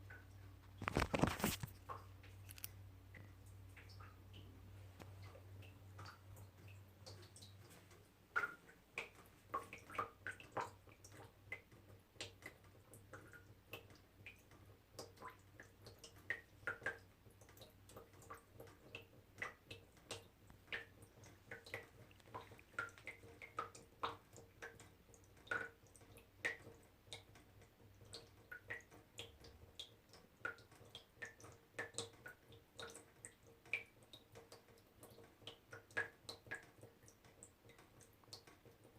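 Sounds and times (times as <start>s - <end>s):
faint steady hum: 0.0s - 38.9s
water drops dripping: 1.8s - 38.9s.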